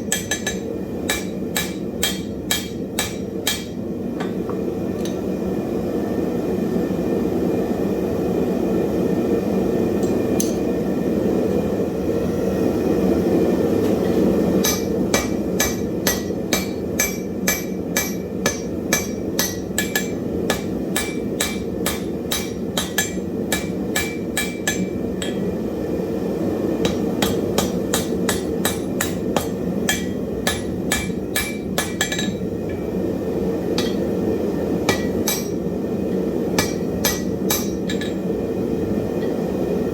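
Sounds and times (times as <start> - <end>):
hammer striking iron on anvil: 0.0 - 5.2, 14.6 - 25.5, 26.8 - 32.9, 33.7 - 34.2, 34.8 - 38.3.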